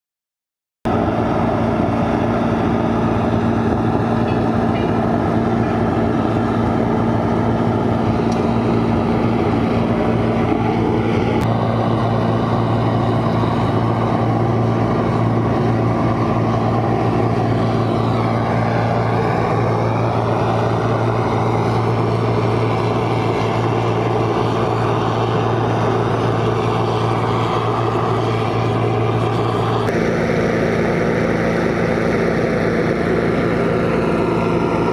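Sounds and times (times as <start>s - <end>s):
machine engine humming: 0.9s - 34.9s.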